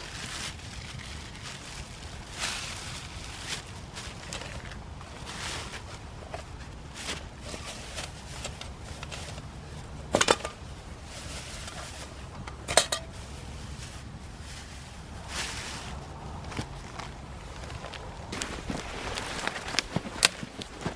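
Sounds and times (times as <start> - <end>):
metal cookware clinking: 10.1 - 10.6, 11.6 - 13.2.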